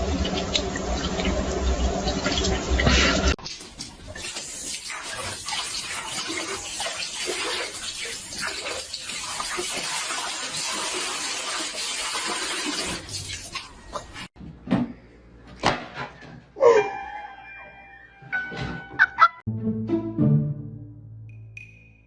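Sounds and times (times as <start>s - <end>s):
water running: 0.0s - 14.3s.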